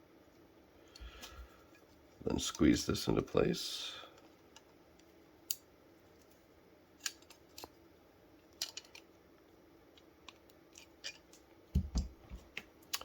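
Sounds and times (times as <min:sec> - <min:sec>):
faint clicks of small parts handled: 0:04.1 - 0:06.4, 0:07.0 - 0:07.8, 0:08.4 - 0:13.0.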